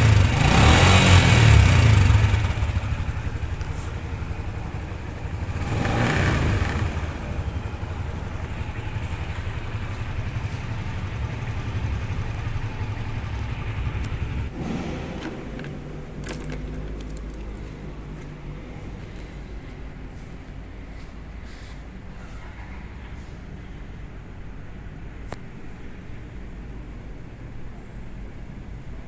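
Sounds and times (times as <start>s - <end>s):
motorcycle engine idling: 0.0s - 14.6s.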